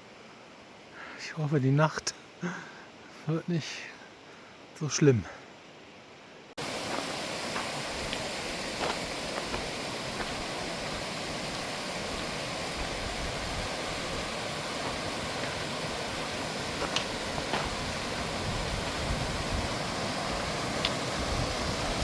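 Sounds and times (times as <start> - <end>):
creek rushing: 6.6 - 22.0.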